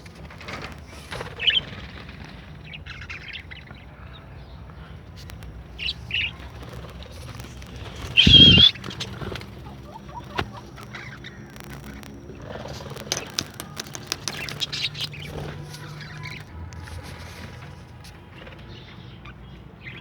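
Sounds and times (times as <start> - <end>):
parrots chirping and squawking: 2.6 - 16.5.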